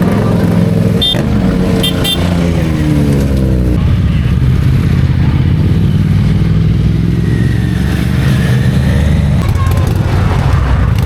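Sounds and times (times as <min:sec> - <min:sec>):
low motorcycle engine rumble: 0:00.0 - 0:11.0
motorcycle passing: 0:00.0 - 0:11.0.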